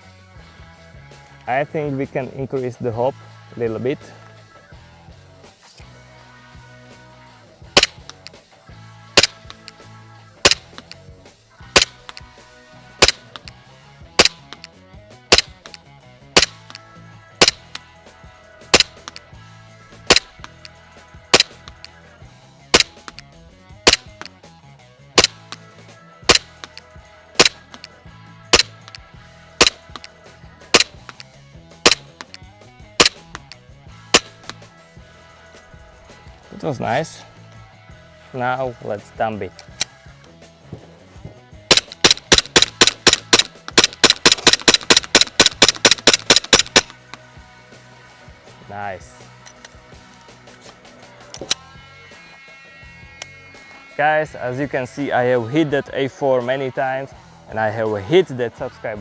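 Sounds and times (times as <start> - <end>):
airsoft pistol shots: 7.8 - 8.2, 9.2 - 9.7, 10.5 - 10.9, 11.8 - 12.2, 13.0 - 13.5, 14.2 - 14.7, 15.3 - 15.8, 16.4 - 16.8, 17.4 - 17.8, 18.8 - 19.2, 20.1 - 20.7, 21.3 - 21.8, 22.8 - 23.2, 23.9 - 24.3, 25.2 - 25.6, 26.3 - 26.8, 27.4 - 27.9, 28.6 - 29.0, 29.6 - 30.1, 30.8 - 31.2, 31.9 - 32.4, 33.0 - 33.6, 34.2 - 34.6, 41.7 - 47.2.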